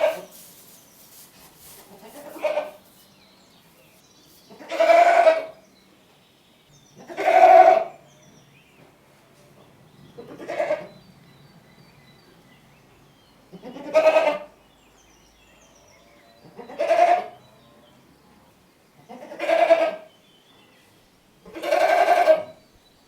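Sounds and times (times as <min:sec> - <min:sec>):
goat bleating: 0:01.9 - 0:02.8, 0:04.6 - 0:05.5, 0:07.0 - 0:07.9, 0:10.3 - 0:10.9, 0:13.6 - 0:14.5, 0:19.1 - 0:20.1, 0:21.5 - 0:22.6.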